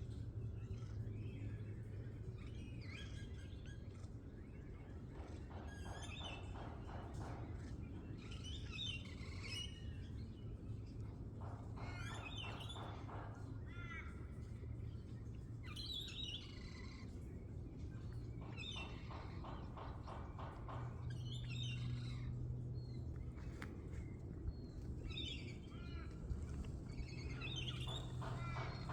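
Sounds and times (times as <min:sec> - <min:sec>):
birds calling: 0:18.2 - 0:28.9.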